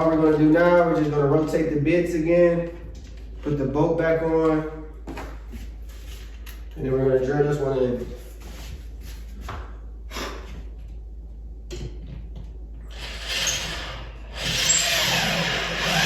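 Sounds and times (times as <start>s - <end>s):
power drill running: 12.9s - 16.0s.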